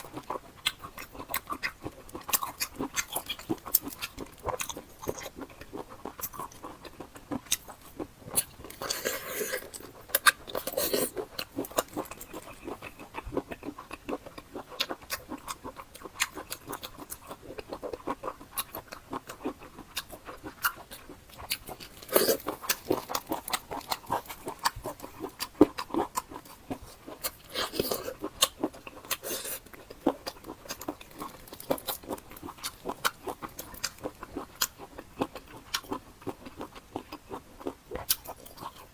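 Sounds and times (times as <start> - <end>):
chewing octopus with wet mouth clicks: 0.0 - 38.9.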